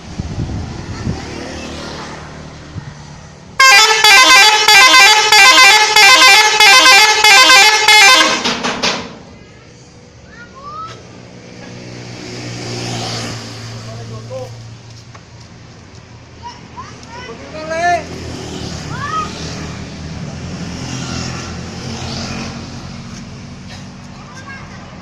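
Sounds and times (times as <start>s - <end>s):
multi-tone musical truck horn: 3.6s - 8.6s.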